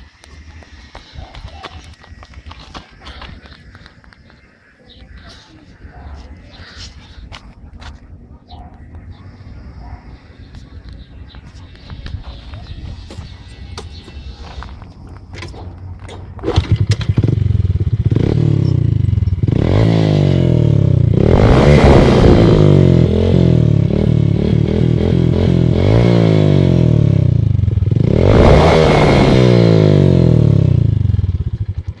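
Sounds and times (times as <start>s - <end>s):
motorcycle engine revving: 7.3s - 32.0s.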